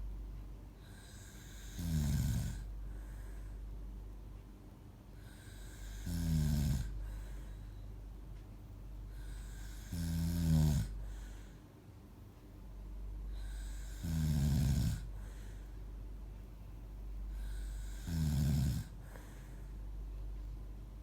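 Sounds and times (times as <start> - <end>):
steady low hum: 0.0 - 21.0
droning snores: 0.8 - 3.6, 5.2 - 7.9, 9.1 - 11.6, 13.3 - 15.8, 17.3 - 19.8.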